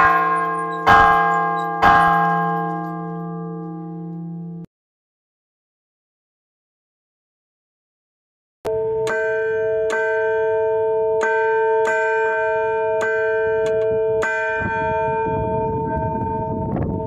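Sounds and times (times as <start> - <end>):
church bells ringing: 0.0 - 4.7, 8.7 - 17.0.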